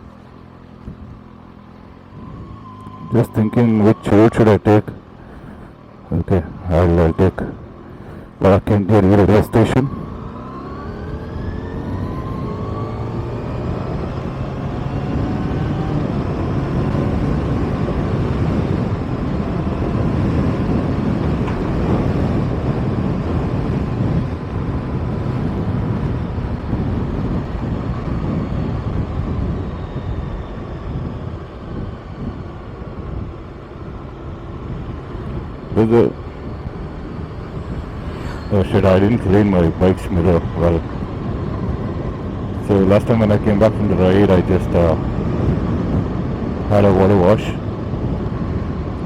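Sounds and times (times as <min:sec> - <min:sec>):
motorcycle engine accelerating: 0:00.0 - 0:08.4, 0:09.7 - 0:49.0
wind on microphone: 0:09.7 - 0:49.0.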